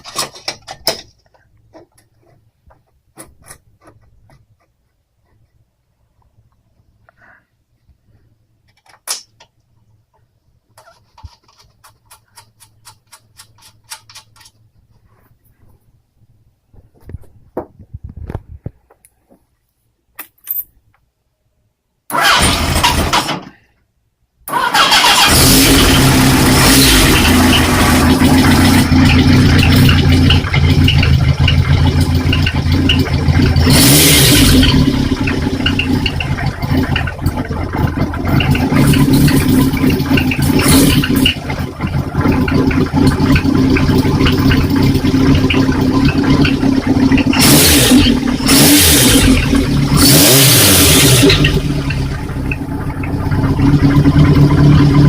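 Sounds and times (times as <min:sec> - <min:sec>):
motorcycle engine idling: 0:27.2 - 0:33.7, 0:34.6 - 0:48.4, 0:51.3 - 0:55.0.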